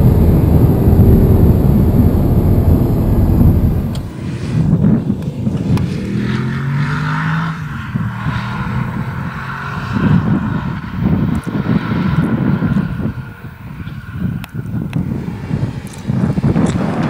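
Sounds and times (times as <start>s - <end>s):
car engine rumbling: 0.0s - 17.0s.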